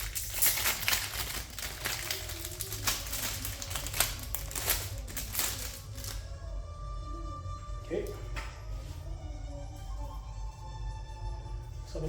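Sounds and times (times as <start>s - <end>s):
plastic packaging crinkling and tearing: 0.0s - 6.3s.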